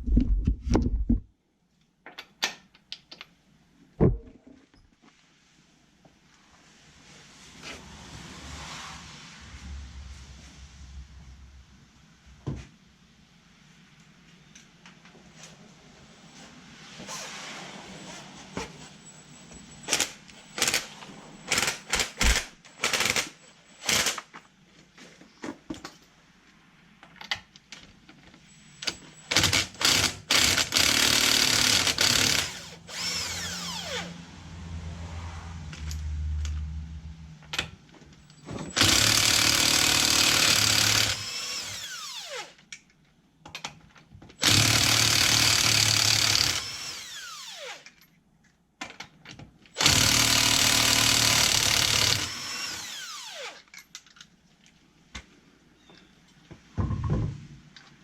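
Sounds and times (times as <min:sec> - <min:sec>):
impact wrench whirring: 0:21.5 - 0:24.3, 0:28.8 - 0:34.2, 0:38.6 - 0:42.6, 0:44.4 - 0:48.0, 0:49.8 - 0:53.7.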